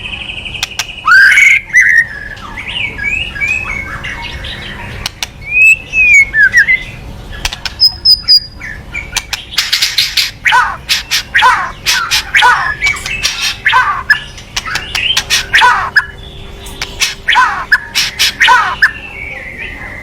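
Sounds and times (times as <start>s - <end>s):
bird whistled notes: 0.7s - 4.2s, 5.4s - 7.0s
bird rattling calls: 7.4s - 18.9s.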